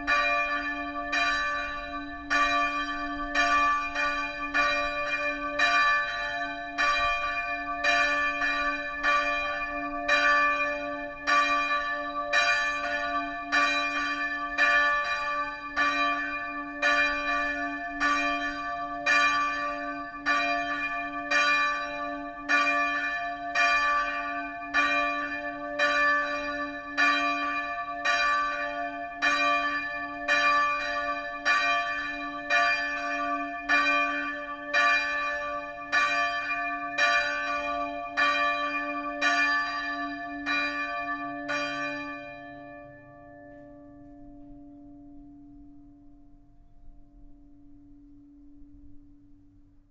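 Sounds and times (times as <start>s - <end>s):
church bell tolling: 0.0s - 49.8s.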